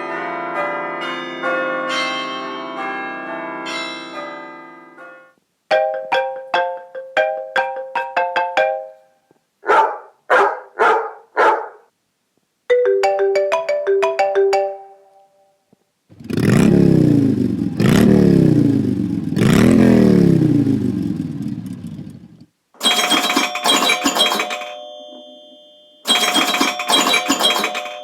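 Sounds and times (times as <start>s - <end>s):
doorbell chime: 0.0s - 9.0s, 22.8s - 28.0s
bell-like ringtone tune: 5.7s - 9.0s, 12.7s - 15.5s, 22.8s - 28.0s
motorcycle engine revs ringtone: 16.2s - 22.2s, 22.8s - 28.0s.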